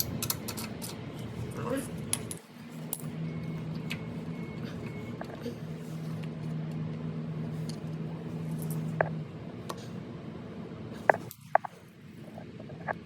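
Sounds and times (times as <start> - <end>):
metal tools clinking: 0.0 - 3.2, 8.4 - 8.9
steady low hum: 0.0 - 13.0.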